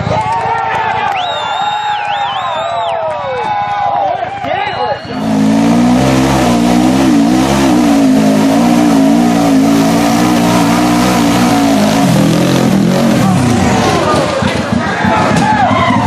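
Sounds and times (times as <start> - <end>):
off-road vehicle engine revving: 5.0 - 16.0.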